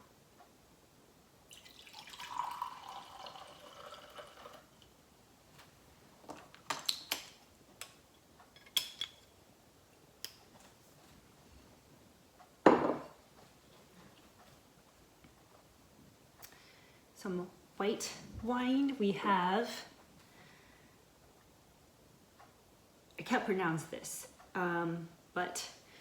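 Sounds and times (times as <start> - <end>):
wine poured into a glass: 1.5 - 4.8.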